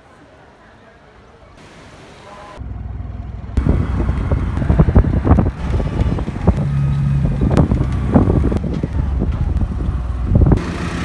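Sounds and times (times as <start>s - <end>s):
machinery rumble: 2.3s - 11.0s.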